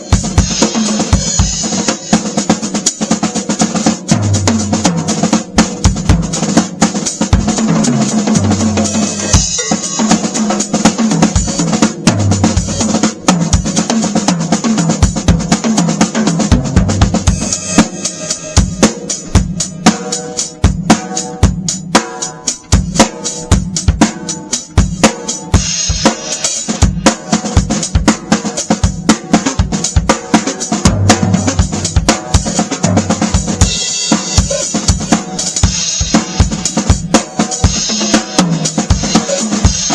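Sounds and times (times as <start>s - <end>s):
drum kit groove: 0.0s - 39.9s
bass drum strokes: 16.5s - 22.0s.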